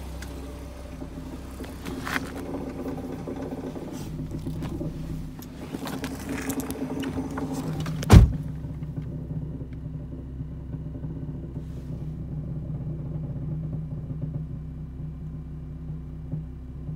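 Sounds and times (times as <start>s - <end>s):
irregular clicks and rattles: 0.0s - 14.5s
car engine idling: 0.0s - 16.9s
loud thump: 7.8s - 8.7s.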